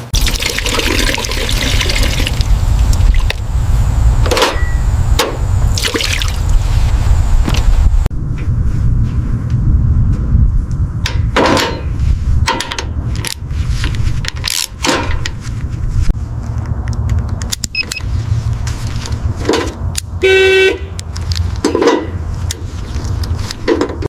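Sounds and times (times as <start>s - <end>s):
low rumble: 1.4s - 14.4s
car doors and parts shutting: 4.2s - 5.4s.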